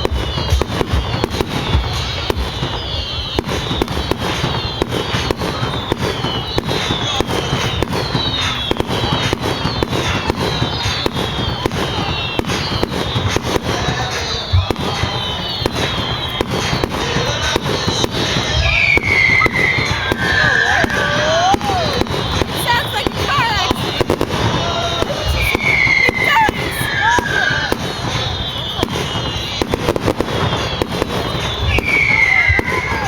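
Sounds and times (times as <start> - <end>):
falling firework whistles: 0.0 - 33.0
firework bangs and crackles: 0.0 - 33.0.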